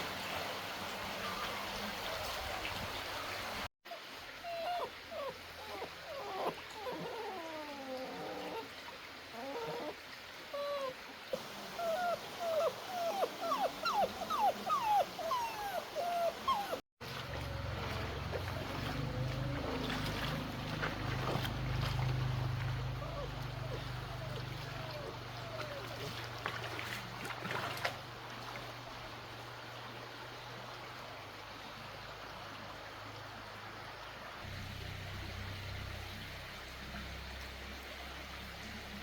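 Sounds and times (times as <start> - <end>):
puppy whimpering and whining: 3.9 - 8.7, 9.4 - 16.8, 22.9 - 26.2.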